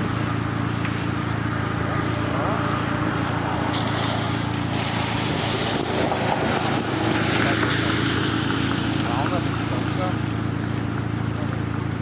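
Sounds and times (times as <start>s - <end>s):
vehicle engine idling: 0.0s - 12.0s
hiss: 3.7s - 6.6s.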